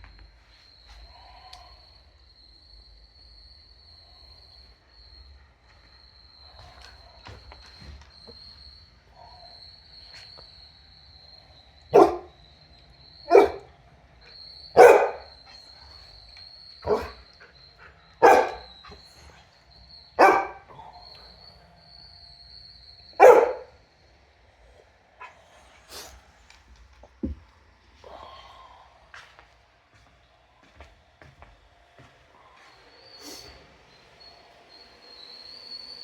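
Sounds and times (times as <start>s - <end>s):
dog barking: 9.1s - 9.6s, 11.9s - 12.4s, 13.2s - 13.7s, 14.7s - 15.6s, 16.8s - 19.4s, 20.1s - 21.3s, 23.1s - 23.8s
robot vacuum whine: 32.6s - 36.0s.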